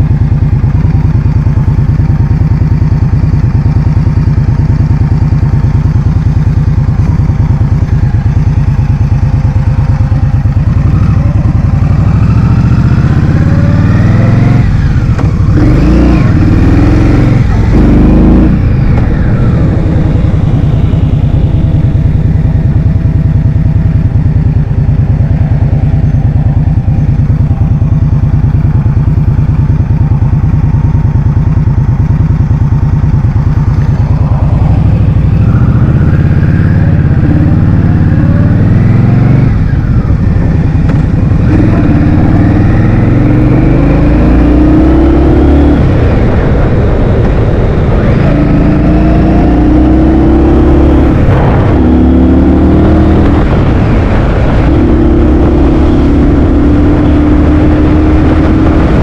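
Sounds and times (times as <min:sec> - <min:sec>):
engine revving: 0:10.7 - 0:22.8, 0:33.7 - 0:59.0
wind buffeting microphone: 0:45.8 - 0:59.0.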